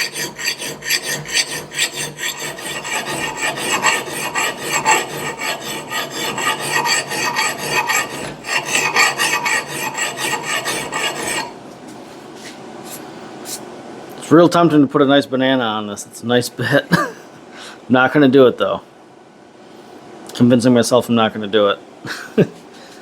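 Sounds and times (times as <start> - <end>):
file rasping on steel: 0.0 - 11.6.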